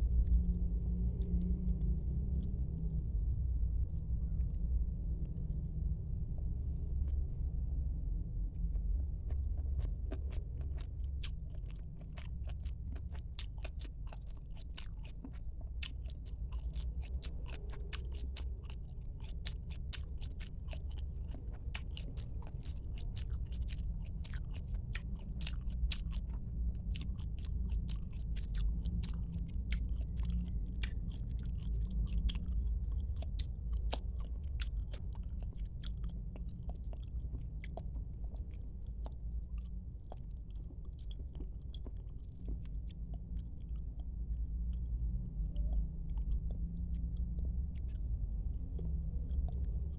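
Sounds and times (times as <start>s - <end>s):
low rumble: 0.0s - 49.9s
wet chewing clicks: 0.2s - 3.5s, 8.5s - 49.9s.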